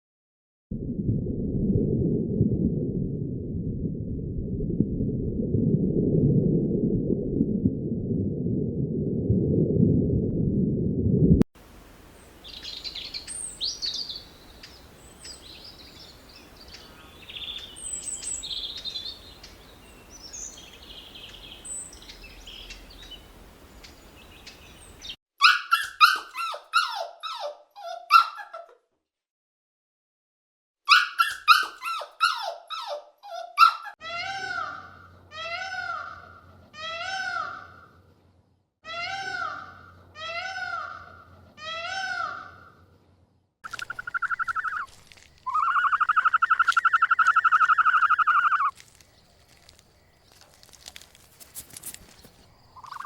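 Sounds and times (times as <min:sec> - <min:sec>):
dog yelping: 0:25.4 - 0:28.7, 0:30.9 - 0:34.0, 0:45.5 - 0:48.7.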